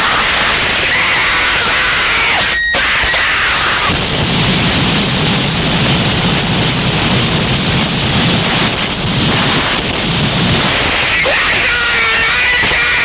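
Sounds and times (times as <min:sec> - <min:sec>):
loud rushing noise: 0:00.0 - 0:13.0
low rumble: 0:01.4 - 0:11.7.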